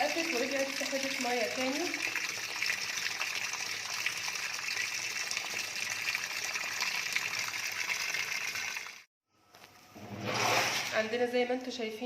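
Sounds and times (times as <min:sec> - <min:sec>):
water pouring into washing machine: 0:00.0 - 0:09.1.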